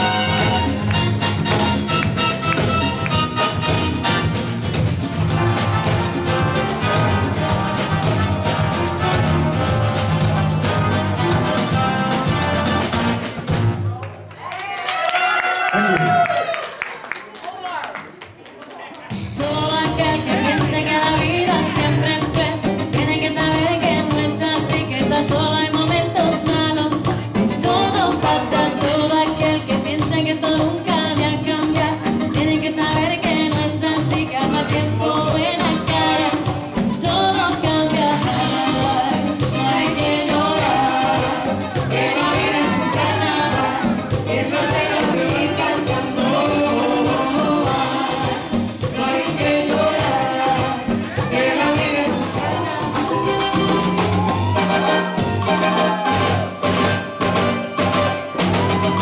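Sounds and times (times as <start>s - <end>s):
live band playing salsa music: 0.0s - 14.0s, 14.9s - 16.6s, 19.0s - 59.0s
person singing: 19.4s - 56.5s.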